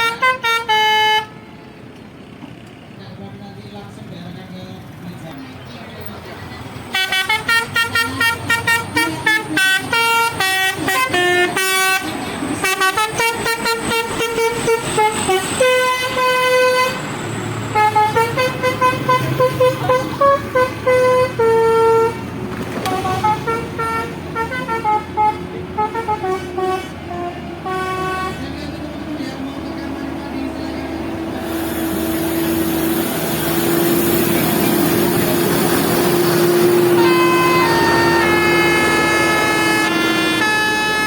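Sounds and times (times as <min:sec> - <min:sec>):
musical air horn playing tune: 0:00.0 - 0:01.5, 0:06.9 - 0:17.1, 0:17.7 - 0:28.5, 0:31.5 - 0:41.0
bus engine humming: 0:00.0 - 0:41.0.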